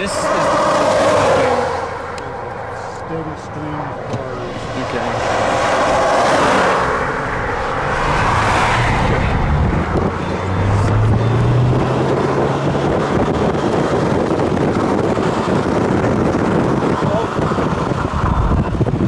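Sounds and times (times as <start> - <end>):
cars passing on a road: 0.0 - 19.0
low engine hum: 0.0 - 19.0
wind on the microphone: 4.0 - 19.0.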